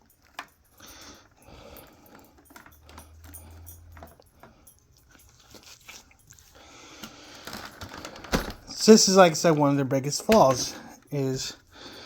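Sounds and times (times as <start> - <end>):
plastic parts clicking and tapping: 7.0 - 8.9, 9.5 - 11.2.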